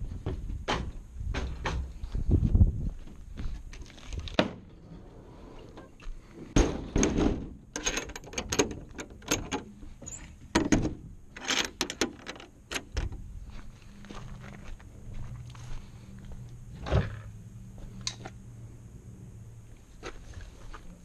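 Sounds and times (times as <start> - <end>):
irregular knocks and clunks: 10.5 - 13.2.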